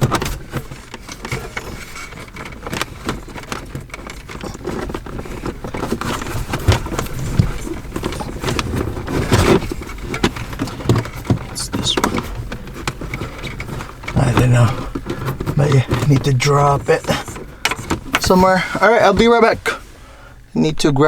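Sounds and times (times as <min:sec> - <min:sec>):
dull knocks: 0:00.0 - 0:19.8
microphone cable rustling and scraping: 0:00.0 - 0:20.5.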